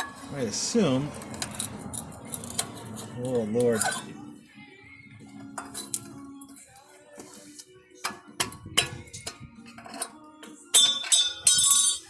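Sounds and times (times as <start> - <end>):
metallic clicks and clinks: 1.1 - 4.0.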